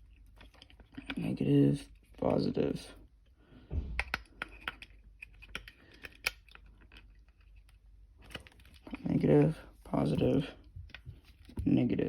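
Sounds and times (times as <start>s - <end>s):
low thump: 3.7s - 4.2s.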